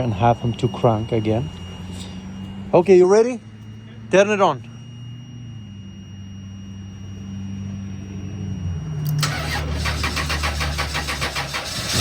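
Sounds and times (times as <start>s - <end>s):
steady low hum: 0.0s - 12.0s
starter cranking engine: 9.2s - 12.0s.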